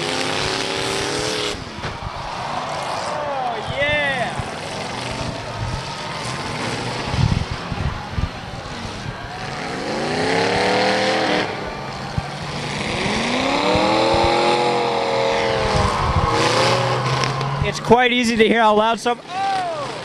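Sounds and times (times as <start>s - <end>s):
car engines revving hard: 0.0s - 20.0s
cars hitting with thuds: 1.4s - 5.6s.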